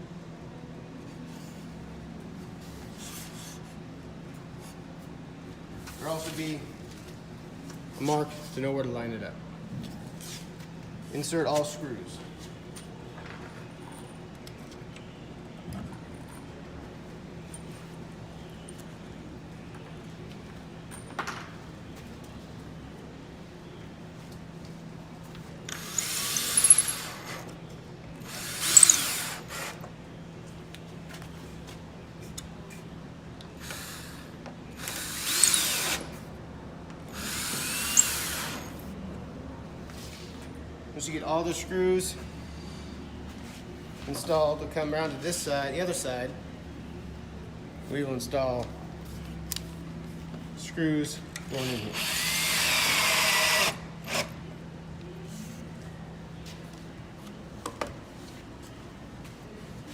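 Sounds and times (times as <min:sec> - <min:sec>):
power drill driving screws into wood: 0:25.7 - 0:27.5, 0:28.2 - 0:29.8, 0:34.8 - 0:36.2, 0:37.1 - 0:38.8, 0:51.6 - 0:54.4.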